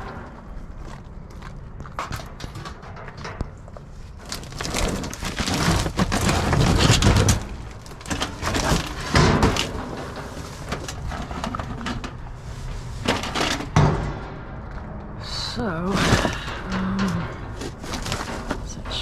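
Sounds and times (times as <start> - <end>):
scrap metal clattering: 2.0 - 14.8, 15.7 - 19.0.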